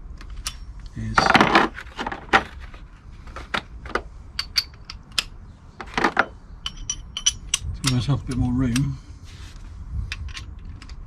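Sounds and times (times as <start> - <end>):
metal hand tools clinking: 6.6 - 8.9.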